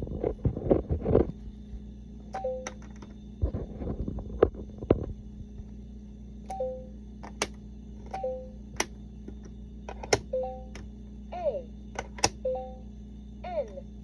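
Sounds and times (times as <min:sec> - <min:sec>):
electronic hum: 0:00.0 - 0:14.0
plastic pieces thumping and clicking: 0:07.2 - 0:08.2, 0:08.8 - 0:10.9, 0:12.0 - 0:12.4.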